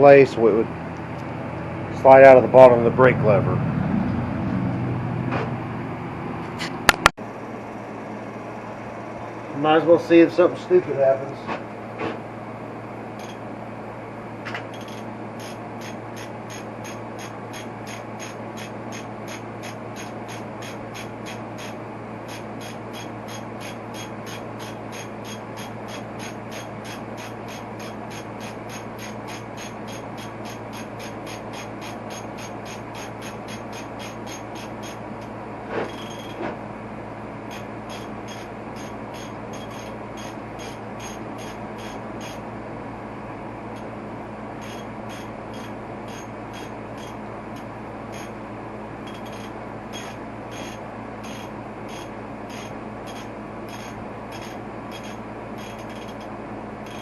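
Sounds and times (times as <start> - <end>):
low hum: 0.0 - 57.0
ratchet wrench clicking: 13.2 - 13.4, 14.7 - 35.3, 35.9 - 36.4, 37.5 - 42.4, 44.6 - 48.3, 49.0 - 57.0.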